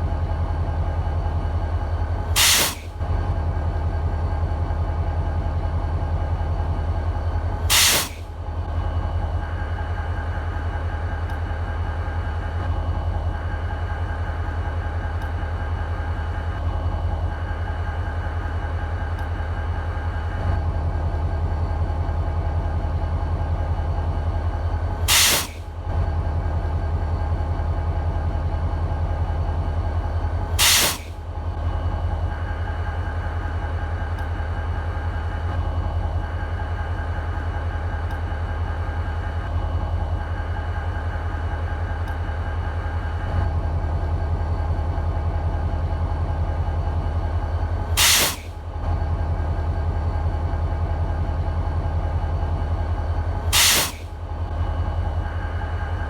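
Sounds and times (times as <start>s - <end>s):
diesel locomotive engine idling: 0.0s - 56.0s
sharp air hisses: 2.4s - 2.9s, 7.7s - 8.2s, 25.1s - 25.6s, 30.6s - 31.2s, 48.0s - 48.6s, 53.5s - 54.1s.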